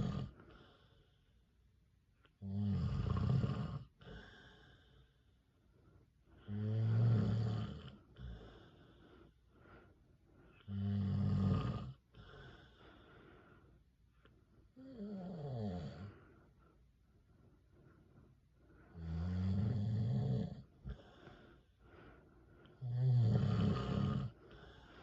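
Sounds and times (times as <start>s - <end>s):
man snoring: 0.0s - 0.4s, 2.4s - 4.8s, 6.4s - 8.8s, 10.6s - 12.8s, 14.8s - 16.1s, 18.9s - 21.2s, 22.8s - 24.9s
quiet breathing: 0.0s - 25.0s.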